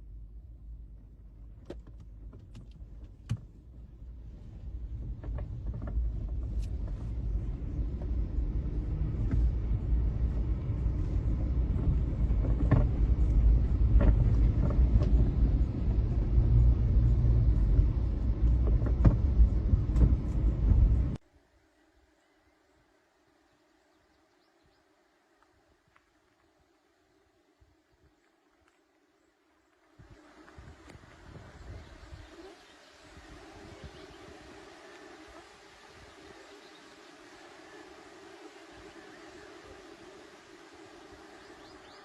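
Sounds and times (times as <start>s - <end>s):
low rumble: 2.8s - 21.2s.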